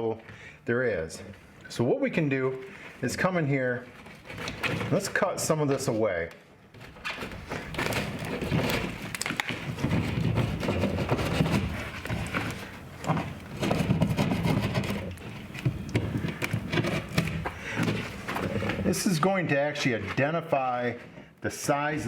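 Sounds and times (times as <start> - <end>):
knife cutting and scraping drywall: 7.3 - 19.1.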